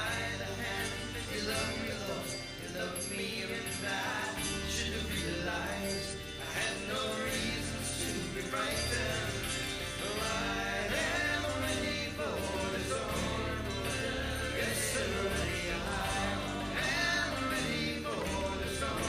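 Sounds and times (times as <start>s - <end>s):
voices singing: 0.0s - 19.0s
bass line: 4.4s - 19.0s.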